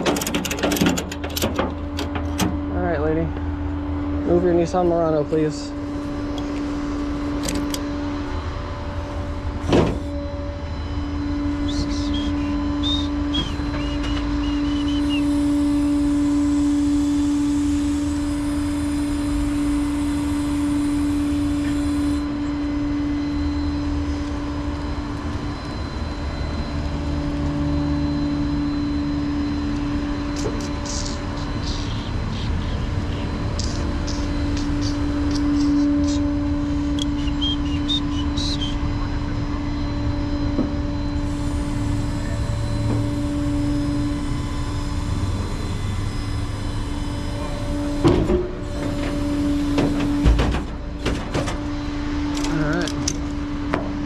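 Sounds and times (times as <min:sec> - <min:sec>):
tow truck idling: 0:00.0 - 0:12.3.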